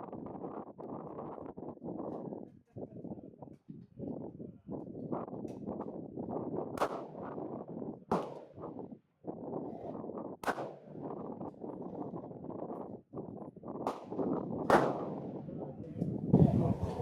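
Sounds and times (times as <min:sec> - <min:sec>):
wind buffeting microphone: 0:00.0 - 0:17.0
rifle shots: 0:06.8 - 0:07.3, 0:08.1 - 0:08.6, 0:10.4 - 0:11.0, 0:13.9 - 0:15.5.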